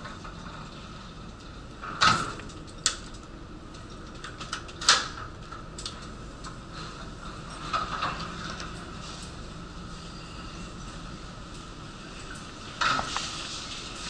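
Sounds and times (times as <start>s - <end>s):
mechanical hum: 0.0s - 14.0s.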